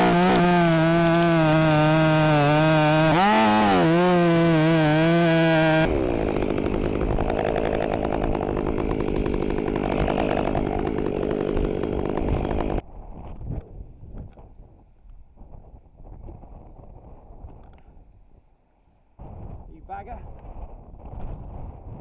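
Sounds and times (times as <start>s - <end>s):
chainsaw running at high revs: 0.0s - 12.8s
faint wind noise: 12.8s - 22.0s.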